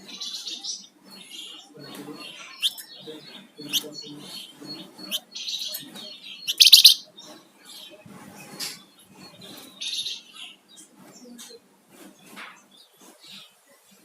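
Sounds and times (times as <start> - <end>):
songbird chirping and whistling: 0.1 - 8.0.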